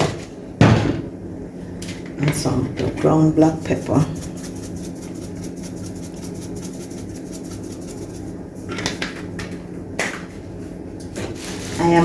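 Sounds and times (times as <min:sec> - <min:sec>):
pepper grinder ticking: 0:03.6 - 0:08.3.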